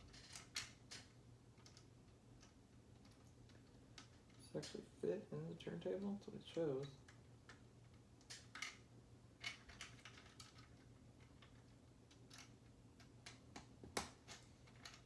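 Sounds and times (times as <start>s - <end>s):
plastic toy bricks clicking: 0.1s - 3.2s.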